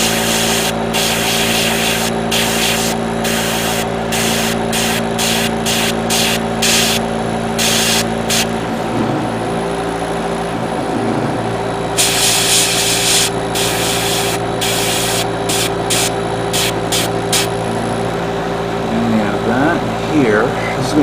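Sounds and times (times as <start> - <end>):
paint sprayer hissing: 0.0 - 8.6, 12.0 - 17.6
air compressor motor hum: 0.0 - 20.6.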